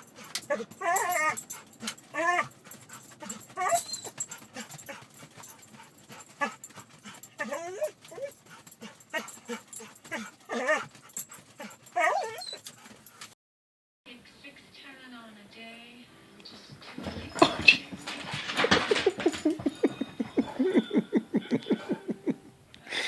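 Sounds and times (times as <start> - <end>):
dog whining: 0.0 - 13.3, 18.6 - 21.0.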